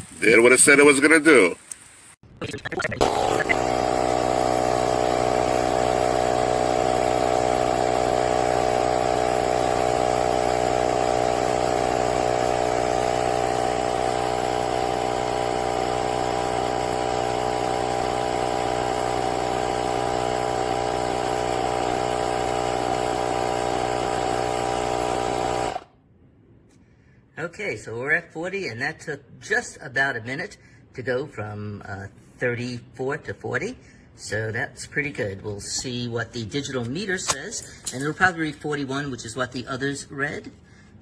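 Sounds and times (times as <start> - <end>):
tire inflator compressor running: 3.0 - 25.9.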